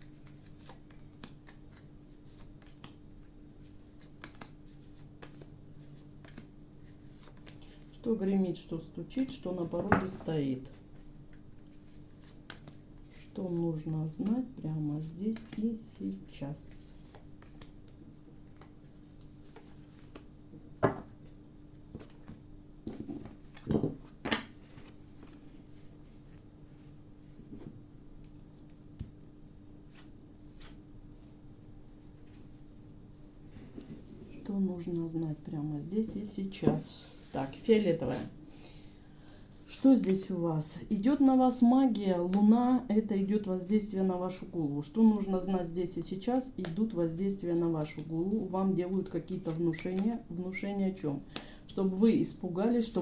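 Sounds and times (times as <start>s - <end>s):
cards being shuffled: 0.1s - 7.9s, 10.6s - 13.6s, 14.2s - 16.1s, 16.9s - 20.4s
cards slapping: 4.0s - 6.5s.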